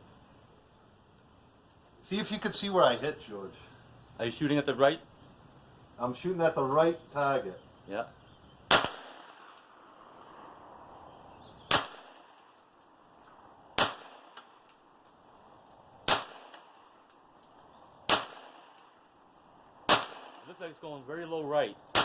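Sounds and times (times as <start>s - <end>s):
carbine gunshots: 8.7s - 9.7s, 11.7s - 12.3s, 13.8s - 14.6s, 16.1s - 16.8s, 18.1s - 18.8s, 19.8s - 20.5s.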